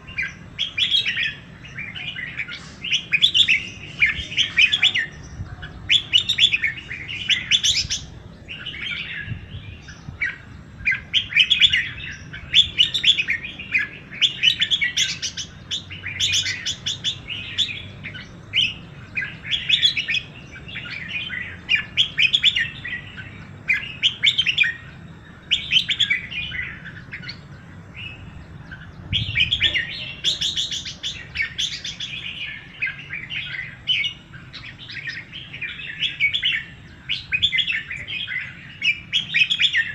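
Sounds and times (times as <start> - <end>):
songbirds chirping: 0.0 - 39.9.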